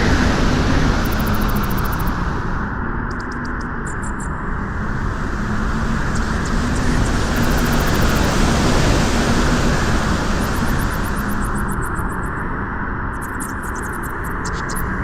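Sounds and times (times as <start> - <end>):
wind blowing on beach: 0.0 - 2.7, 4.6 - 12.2.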